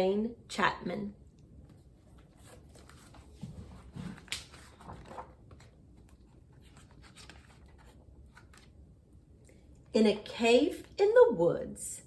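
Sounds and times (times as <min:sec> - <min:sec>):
pages turning: 0:01.6 - 0:08.9.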